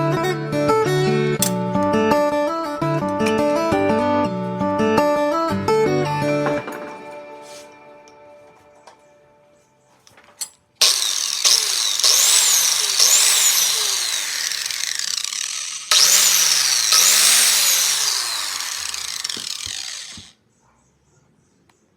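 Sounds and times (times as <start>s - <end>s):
angle grinder motor whine: 10.8s - 20.3s.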